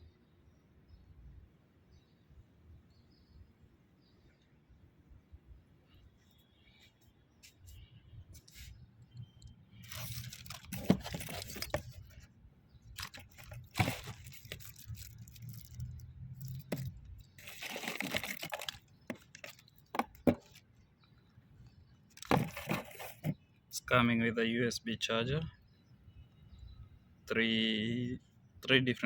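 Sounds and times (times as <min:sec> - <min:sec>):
crinkling and crunching: 0:09.7 - 0:20.7, 0:22.1 - 0:23.4.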